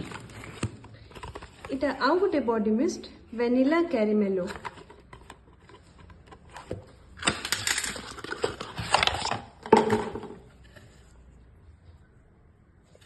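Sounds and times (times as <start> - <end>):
packaging crinkling and rustling: 4.5 - 9.7
packaging clicks: 7.2 - 9.4.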